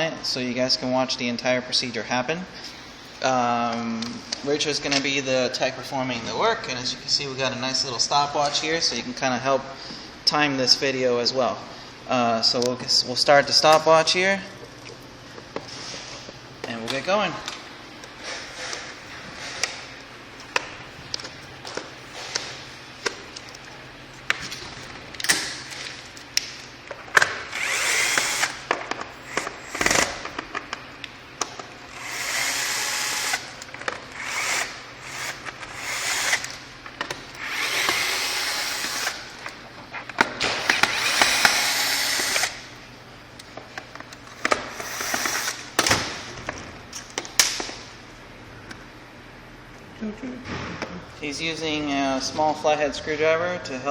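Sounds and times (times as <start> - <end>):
cordless drill bursts: 27.5 - 30.2, 31.9 - 33.6, 34.2 - 36.6, 37.4 - 39.3, 40.5 - 42.7, 44.7 - 45.8.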